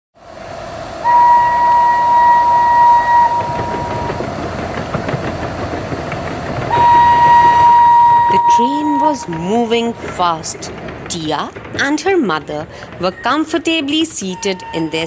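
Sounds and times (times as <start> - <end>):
train rumbling and rattling: 0.2 - 15.0
train whistle blasts: 1.0 - 4.1, 6.7 - 9.3, 14.2 - 15.0.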